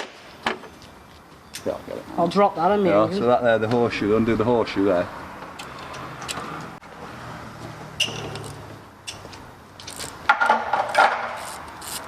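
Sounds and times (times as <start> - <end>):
metal tool clicks and rattles: 8.0 - 10.2.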